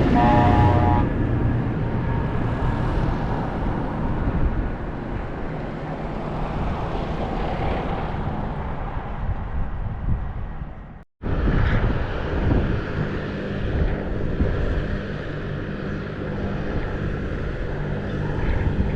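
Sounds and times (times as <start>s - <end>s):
tractors driving past: 0.0s - 7.1s.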